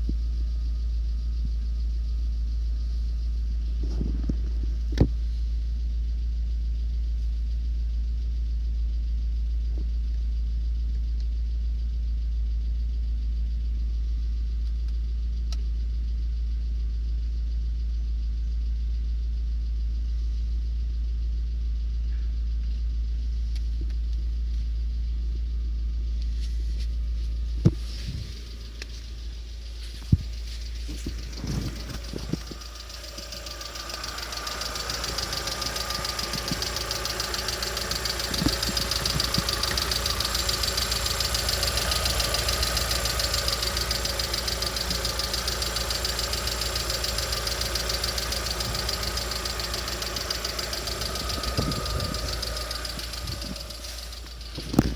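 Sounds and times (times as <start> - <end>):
car engine idling: 25.0 - 54.9
sharp clicks: 30.1 - 54.9.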